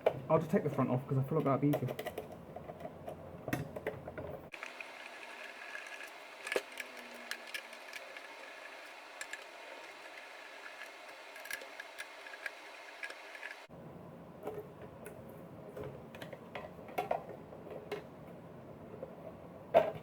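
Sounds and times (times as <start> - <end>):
hand tools clicking and tapping: 0.0 - 4.4.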